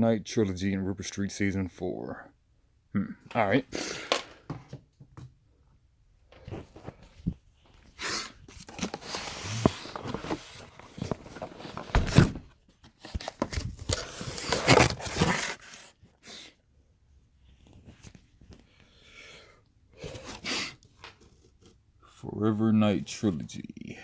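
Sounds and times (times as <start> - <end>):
rummaging through stored items: 6.3 - 16.0.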